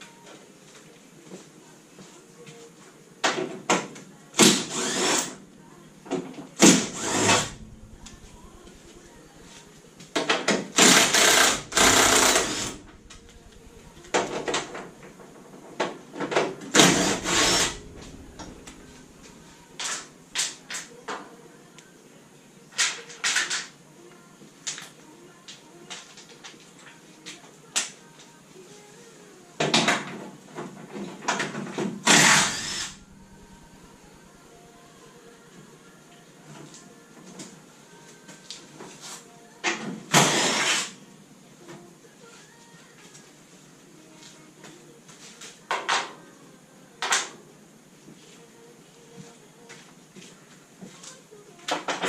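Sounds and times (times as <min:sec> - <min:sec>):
rapid mechanical clicking and clatter: 0:06.6 - 0:09.6, 0:10.2 - 0:15.2, 0:16.7 - 0:20.5, 0:32.1 - 0:34.2.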